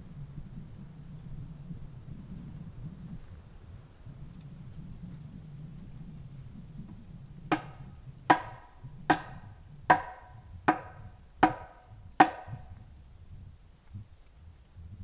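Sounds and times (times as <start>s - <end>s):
hand tool striking wood: 7.5s - 12.8s.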